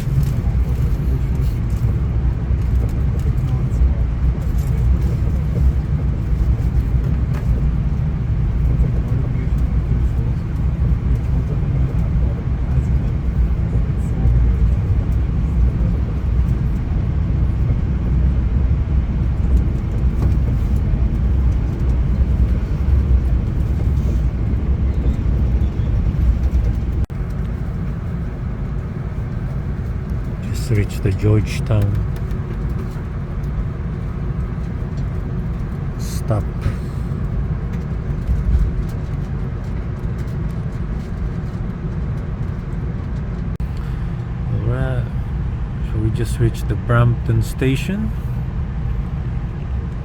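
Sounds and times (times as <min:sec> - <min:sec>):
train rumble from inside car: 0:00.0 - 0:50.0.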